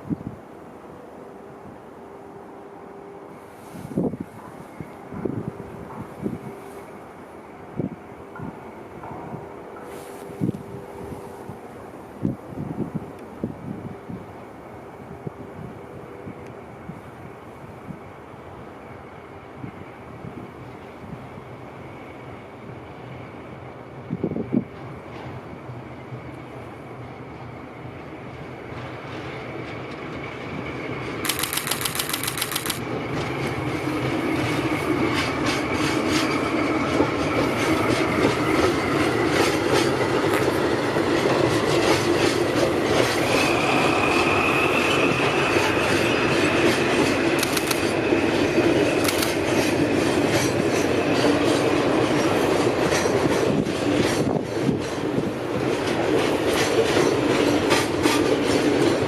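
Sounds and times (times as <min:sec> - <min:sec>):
diesel locomotive passing: 0:00.0 - 0:59.0
wheels squealing on rails: 0:01.6 - 0:31.5, 0:32.7 - 0:59.0
wheels clacking over rail joints: 0:31.4 - 0:43.6, 0:44.9 - 0:59.0.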